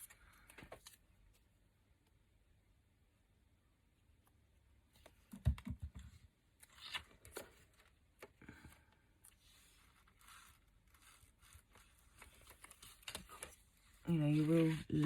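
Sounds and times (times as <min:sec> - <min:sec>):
paper rustling and crinkling: 0:06.6 - 0:15.0.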